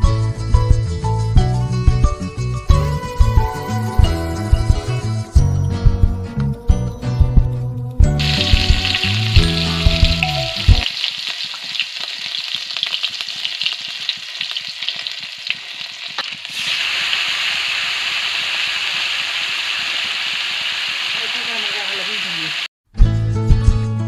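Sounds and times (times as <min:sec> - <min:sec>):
music: 0:00.0 - 0:10.9, 0:22.9 - 0:24.0
food sizzling in hot oil: 0:08.2 - 0:22.7.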